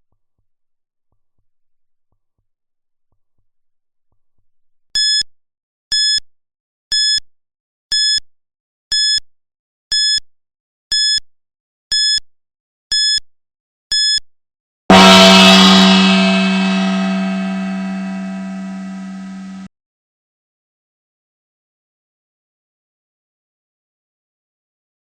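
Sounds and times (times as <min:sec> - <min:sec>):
gong ringing: 0:14.9 - 0:19.7.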